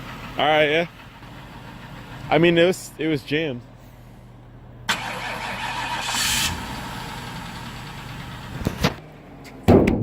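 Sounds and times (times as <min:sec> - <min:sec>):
starter motor engaging: 0:04.9 - 0:06.8
car engine running: 0:05.7 - 0:09.4.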